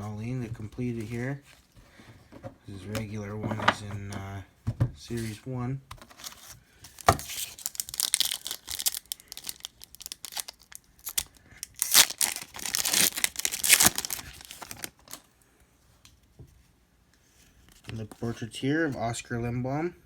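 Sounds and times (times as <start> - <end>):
wrapper tearing and crinkling: 6.9 - 15.3.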